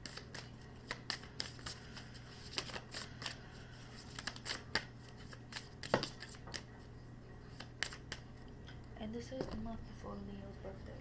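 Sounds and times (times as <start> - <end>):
cards being shuffled: 0.0 - 6.8, 7.5 - 8.3.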